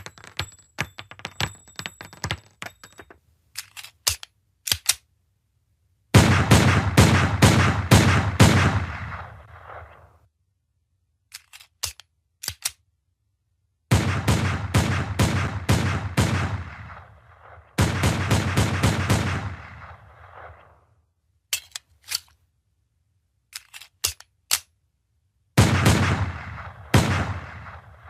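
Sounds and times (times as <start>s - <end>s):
metallic gun clicks: 2.8s - 5.1s, 11.3s - 12.8s, 21.5s - 22.4s, 23.5s - 24.8s
rapid burst of gunshots: 6.2s - 9.9s, 13.9s - 20.7s, 25.6s - 28.0s
pistol gunshots: 6.2s - 10.1s, 13.9s - 20.9s, 25.6s - 28.0s.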